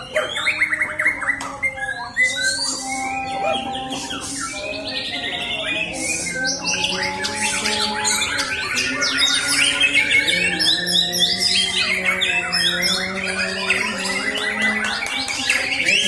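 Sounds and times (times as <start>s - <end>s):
bird singing whistles and trills: 0.0s - 16.0s.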